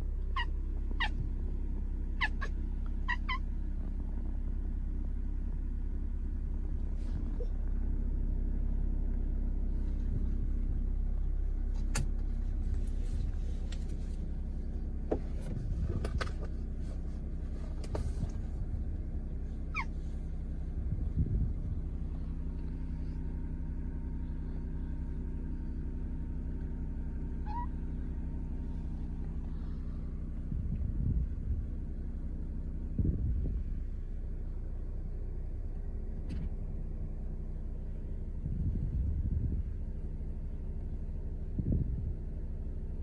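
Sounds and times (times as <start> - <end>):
traffic rumble: 0.0 - 43.0
cat chirping meows: 0.2 - 1.3, 2.2 - 3.5, 19.7 - 19.9, 27.4 - 27.8.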